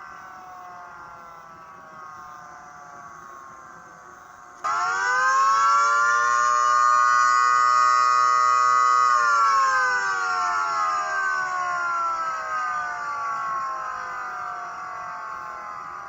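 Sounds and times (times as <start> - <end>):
warning siren wailing: 4.6 - 16.0.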